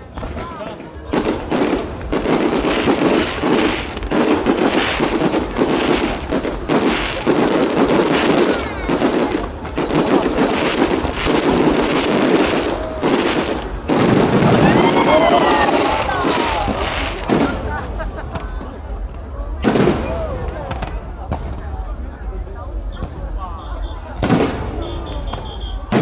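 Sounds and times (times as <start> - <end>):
fireworks bangs and crackles: 0.0 - 26.0.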